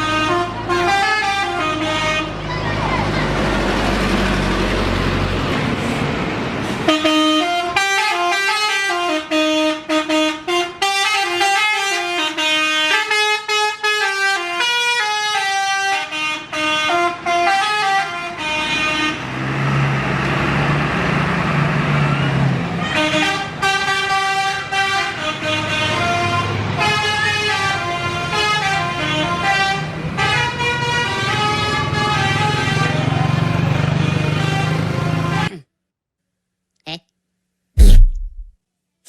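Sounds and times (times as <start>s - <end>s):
bus horn playing a tune: 0.0s - 2.4s, 6.8s - 19.3s, 22.8s - 35.5s
low hum: 37.8s - 38.5s
rushing noise: 37.8s - 38.5s.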